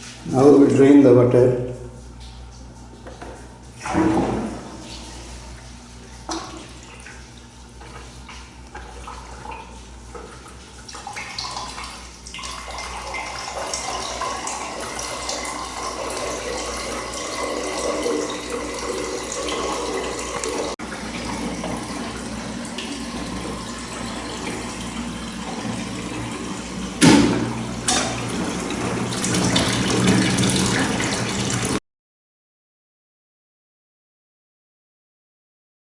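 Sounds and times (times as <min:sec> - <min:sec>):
water running and splashing: 0:03.7 - 0:31.8.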